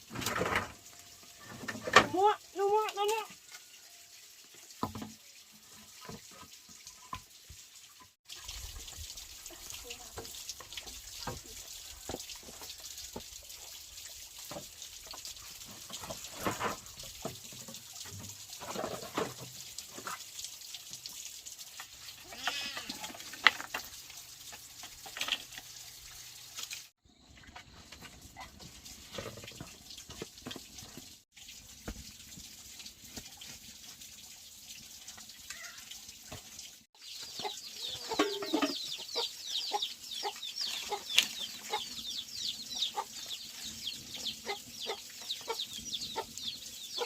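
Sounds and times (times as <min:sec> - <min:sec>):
running water: 0:00.0 - 0:47.0
goats bleating: 0:22.2 - 0:23.2.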